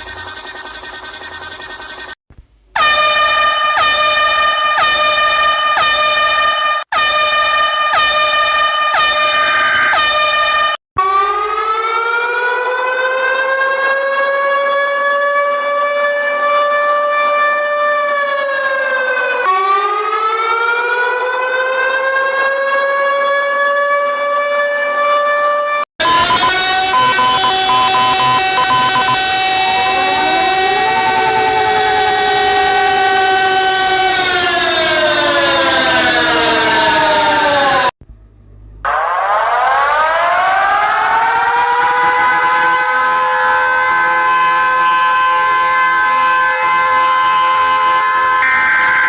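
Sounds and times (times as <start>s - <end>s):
siren wail: 0.0s - 2.2s, 2.8s - 38.0s, 38.8s - 49.0s
horn-like alarm tone: 2.8s - 11.1s, 26.0s - 38.0s, 38.9s - 49.0s.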